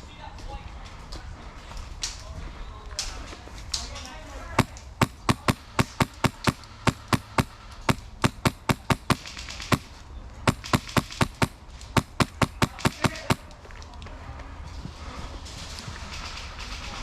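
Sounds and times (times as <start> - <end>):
airsoft gun shots: 4.6 - 9.9, 10.5 - 13.4.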